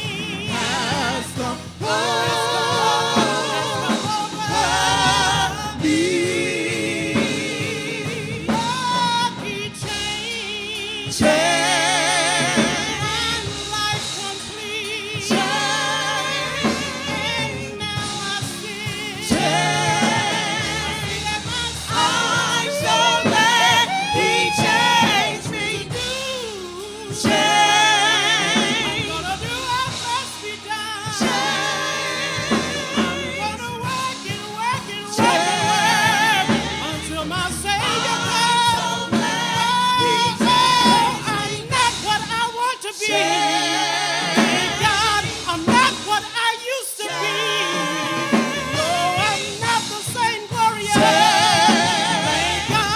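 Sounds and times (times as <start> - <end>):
instrumental accompaniment: 0.0 - 52.9
voices singing gospel song: 0.0 - 52.9.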